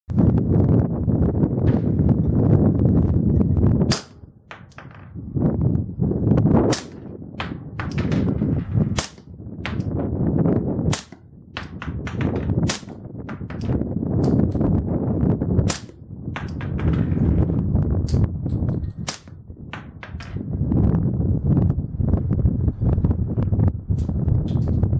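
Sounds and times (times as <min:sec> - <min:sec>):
suppressed pistol shots: 0:03.9 - 0:05.0, 0:06.7 - 0:10.0, 0:10.9 - 0:14.4, 0:15.6 - 0:16.6.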